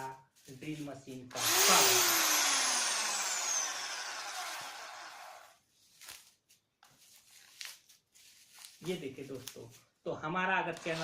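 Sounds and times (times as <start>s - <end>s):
electric drill whirring down: 1.3s - 5.6s.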